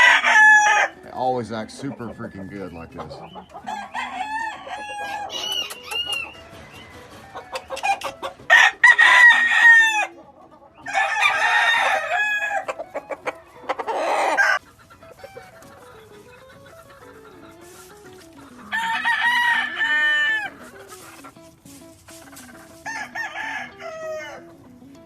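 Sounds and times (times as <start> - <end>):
rooster crowing: 0.0 - 1.0, 3.6 - 6.4, 7.8 - 10.1, 10.9 - 12.7, 13.9 - 14.6, 18.7 - 20.6, 22.8 - 24.5
rooster clucking: 0.0 - 25.0.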